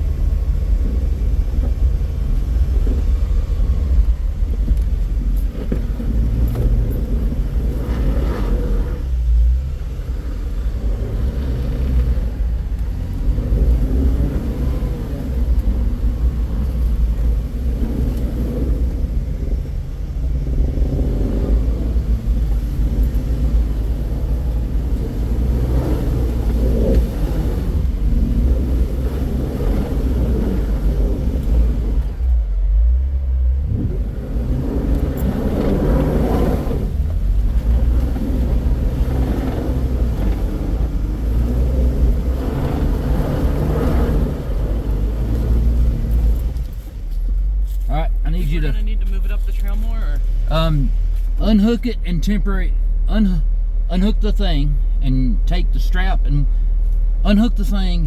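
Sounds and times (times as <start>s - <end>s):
vehicle engine rumbling: 0.0s - 58.0s.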